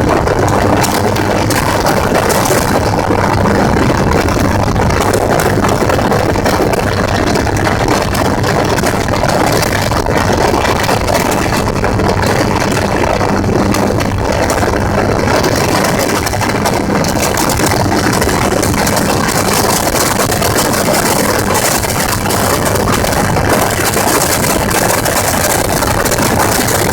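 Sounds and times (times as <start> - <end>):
gyrocopter engine and propeller: 0.0 - 26.9
rushing noise: 0.0 - 26.9.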